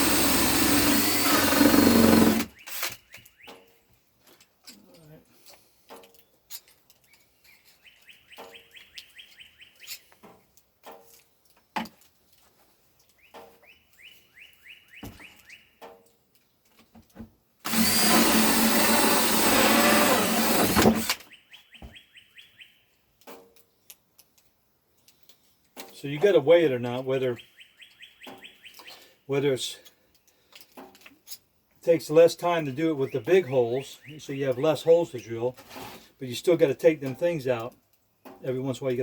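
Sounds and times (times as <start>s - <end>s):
power drill boring: 0.0s - 3.0s, 17.6s - 21.2s.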